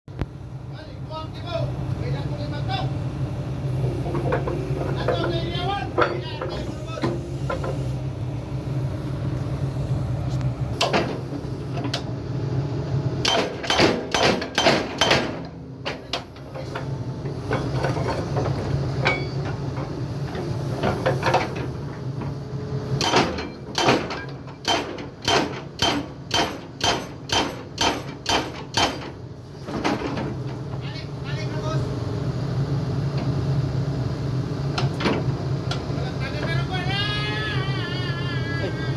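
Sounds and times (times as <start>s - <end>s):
excavator engine hum: 0.1s - 38.9s
hydraulic rock breaker hammering: 13.2s - 19.8s, 23.0s - 30.4s.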